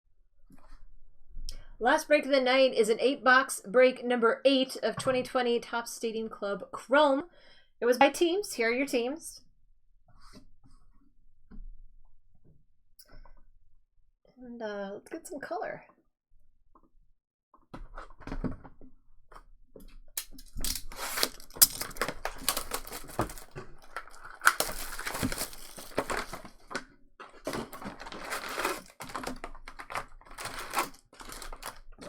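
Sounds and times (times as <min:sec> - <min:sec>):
crinkling and clicking of cards: 0:17.6 - 0:32.0
card packs being torn open: 0:20.2 - 0:32.0.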